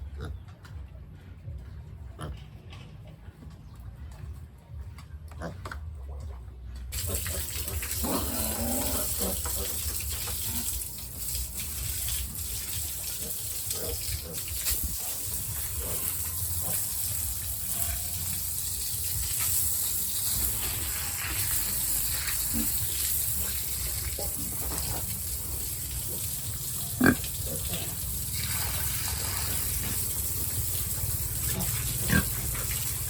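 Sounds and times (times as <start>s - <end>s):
pigs grunting and crying: 7.0s - 11.0s, 12.3s - 18.6s, 20.4s - 33.0s.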